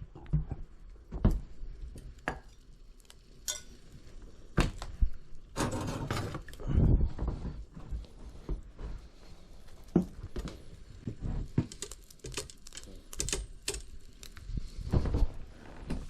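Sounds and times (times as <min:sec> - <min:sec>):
crinkling: 0:01.0 - 0:16.0
clicks snaps and knocks: 0:11.5 - 0:14.4.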